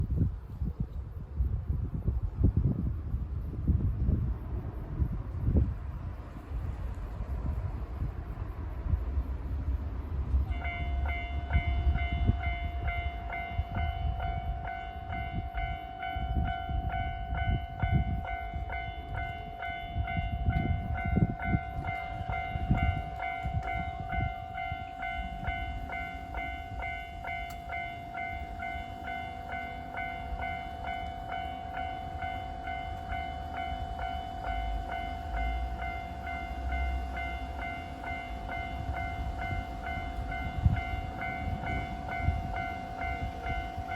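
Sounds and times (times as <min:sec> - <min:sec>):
level crossing warning bell: 0:10.2 - 0:43.9.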